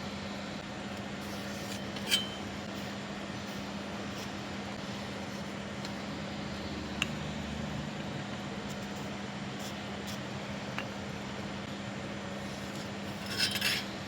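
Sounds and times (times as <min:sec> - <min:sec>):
machine hum with hiss: 0:00.0 - 0:14.0.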